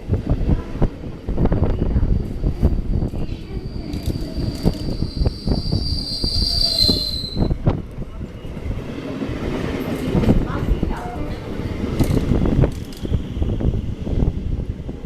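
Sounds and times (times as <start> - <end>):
train rumble: 0.0 - 15.0
train wheels squealing: 3.2 - 7.6.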